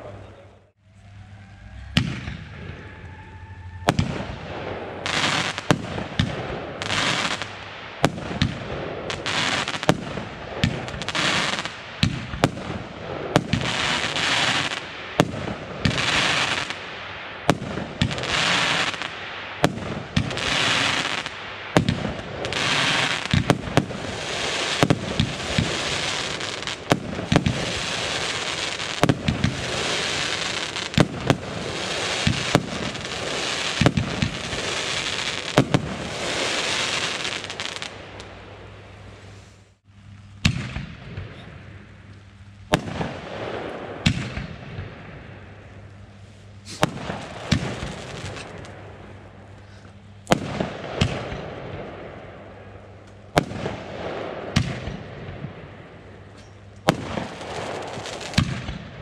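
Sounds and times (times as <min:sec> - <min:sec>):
firework bangs with crackle: 0:01.9 - 0:02.8, 0:03.8 - 0:38.3, 0:40.4 - 0:41.4, 0:42.7 - 0:45.0, 0:46.6 - 0:48.7, 0:50.3 - 0:51.9, 0:53.3 - 0:55.5, 0:56.8 - 0:59.0.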